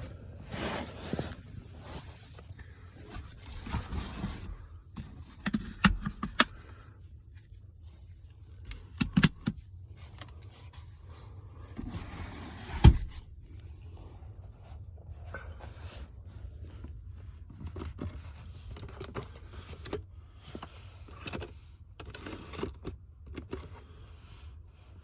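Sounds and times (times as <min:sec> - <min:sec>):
car parts clicking and knocking: 0:05.0 - 0:06.7, 0:08.6 - 0:10.3.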